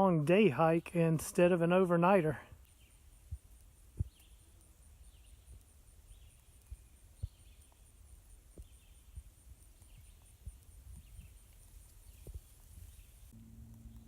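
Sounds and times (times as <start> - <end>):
high insect trill: 1.6 - 14.0
faint chirps: 2.2 - 14.0
footsteps on woodland trail: 6.1 - 13.3.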